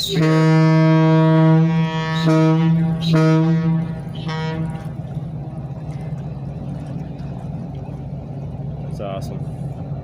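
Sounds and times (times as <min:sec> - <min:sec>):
deep ship horn blasts: 0:00.0 - 0:07.4.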